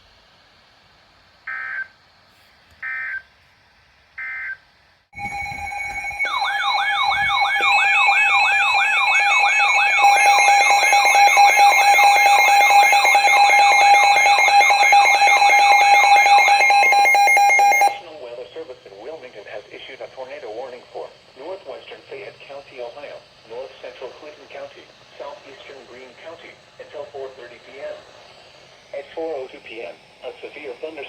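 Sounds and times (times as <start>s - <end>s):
weather radio alert siren: 1.5s - 1.9s, 2.8s - 3.2s, 5.2s - 18.2s
buzzy data bursts: 5.2s - 31.0s.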